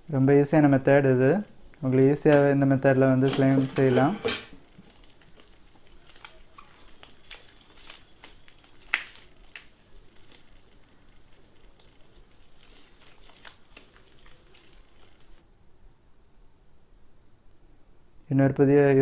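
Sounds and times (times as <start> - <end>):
slime clicking and crackling: 4.8 - 15.4.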